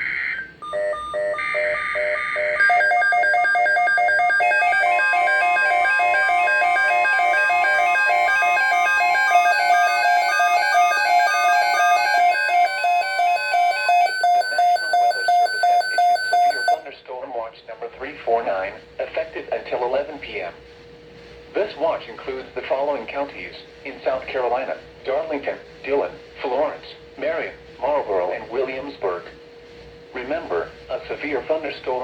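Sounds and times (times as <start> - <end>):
electronic alarm beeps: 0.0 - 16.8
steady warning tone: 0.0 - 16.9.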